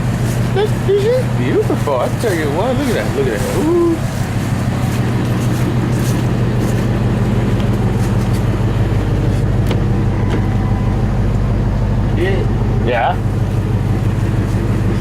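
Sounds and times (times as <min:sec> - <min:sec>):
loud engine idling: 0:00.0 - 0:15.0.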